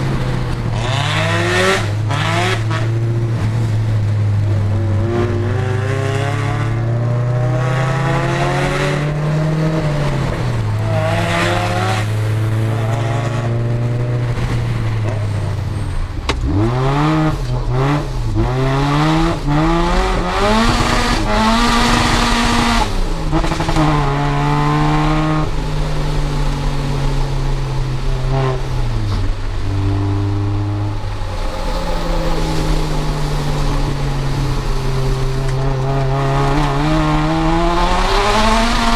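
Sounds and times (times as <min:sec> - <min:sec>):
car engine revving: 0:00.0 - 0:38.9
tyres squealing: 0:15.1 - 0:38.9.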